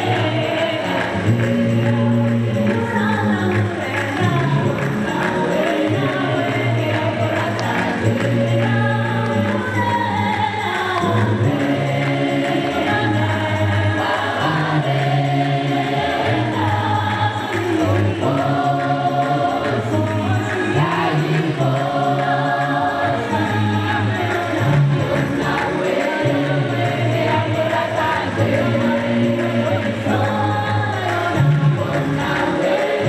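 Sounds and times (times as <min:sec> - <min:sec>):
choir singing: 0:00.0 - 0:33.0
instrumental backing with bass: 0:00.0 - 0:33.0.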